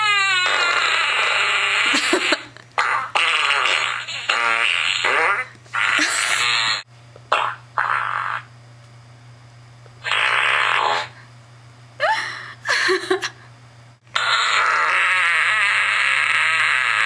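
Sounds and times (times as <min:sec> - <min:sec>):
fart sound effects: 0:00.0 - 0:08.5, 0:10.0 - 0:11.2, 0:14.1 - 0:17.0
steady low hum: 0:01.6 - 0:14.4.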